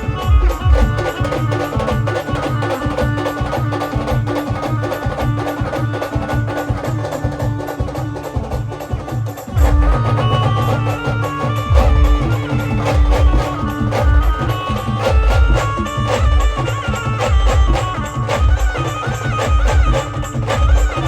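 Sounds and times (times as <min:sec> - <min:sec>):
heavy bass drum: 0:00.0 - 0:02.0, 0:09.5 - 0:21.0
live band playing: 0:00.0 - 0:21.0
rapid drumming: 0:00.0 - 0:21.0
sustained melody tones: 0:03.8 - 0:21.0.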